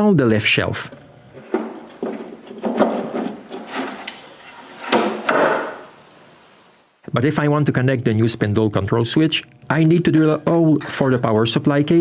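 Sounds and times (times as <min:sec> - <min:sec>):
wooden knocks and scrapes: 0:01.4 - 0:05.9.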